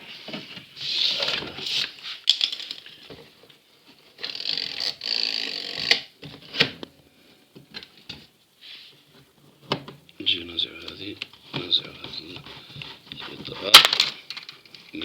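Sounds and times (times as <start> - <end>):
plastic parts clicking and knocking: 2.2 - 3.3, 10.8 - 14.9
plastic scraping and rubbing: 11.0 - 14.9.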